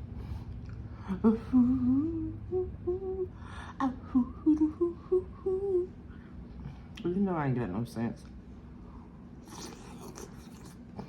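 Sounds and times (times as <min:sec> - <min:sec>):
woman humming a tune: 0:01.1 - 0:05.9.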